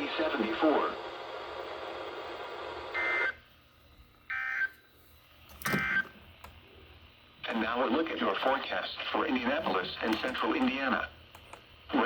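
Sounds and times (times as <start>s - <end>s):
radio hiss: 0.0s - 3.4s, 6.6s - 11.2s, 11.8s - 12.0s.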